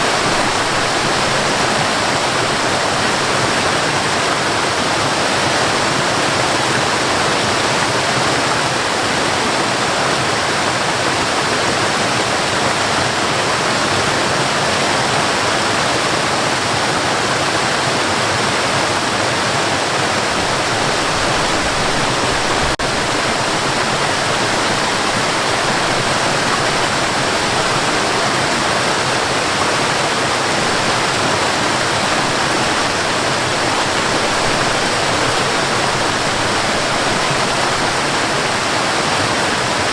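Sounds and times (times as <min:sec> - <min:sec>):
water pouring and splashing: 0:20.2 - 0:39.9.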